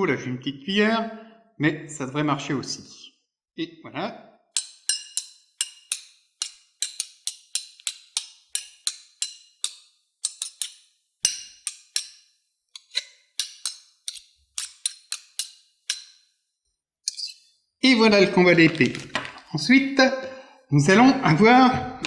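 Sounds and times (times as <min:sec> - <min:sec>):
metal clinks of spoon and knife: 0:04.6 - 0:16.2, 0:17.1 - 0:17.4.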